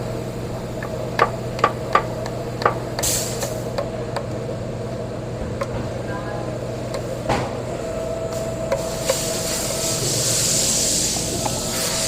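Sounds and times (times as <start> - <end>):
steady hum: 0.0 - 12.0
sharp metallic knocks: 0.8 - 4.3.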